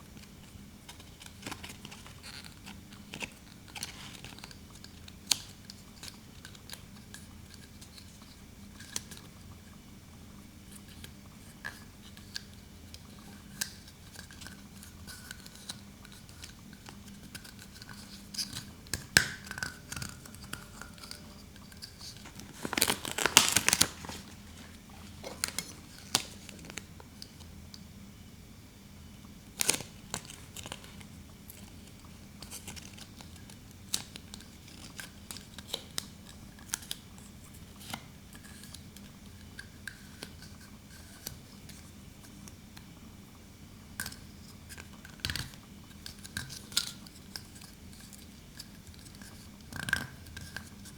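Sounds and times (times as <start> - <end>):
packaging crinkling and tearing: 17.5 - 26.9, 29.6 - 35.5.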